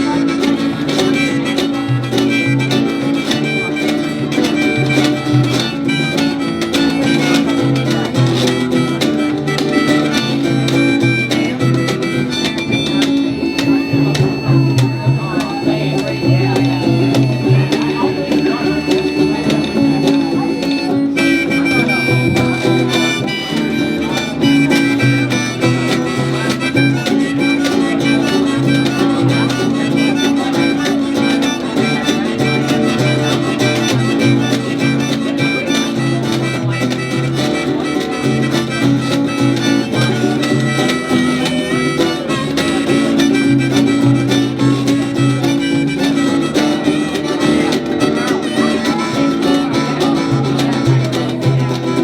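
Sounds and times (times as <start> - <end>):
washboard rhythm: 0.0 - 39.9
harmonica lead: 0.0 - 52.0
strummed guitar: 0.0 - 52.0
washtub bass: 12.0 - 24.9.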